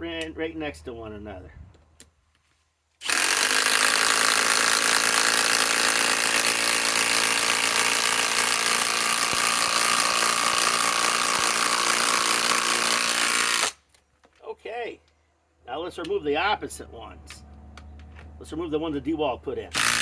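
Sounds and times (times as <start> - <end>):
impact driver hammering: 3.0 - 13.8, 19.7 - 20.0.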